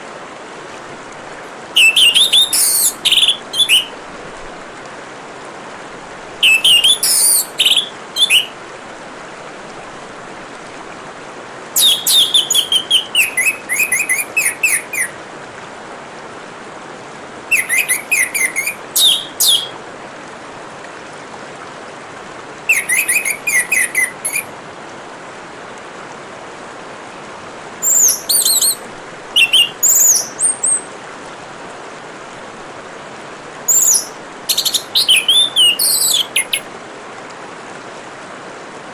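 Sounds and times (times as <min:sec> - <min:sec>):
water trickling: 0:00.6 - 0:04.9, 0:05.6 - 0:11.0, 0:11.7 - 0:15.2, 0:17.5 - 0:19.8, 0:22.2 - 0:24.5, 0:27.8 - 0:31.2, 0:33.6 - 0:36.7
thrush singing: 0:01.8 - 0:04.0, 0:06.4 - 0:08.6, 0:11.8 - 0:15.2, 0:17.5 - 0:19.7, 0:22.7 - 0:24.5, 0:27.8 - 0:30.9, 0:33.7 - 0:36.7.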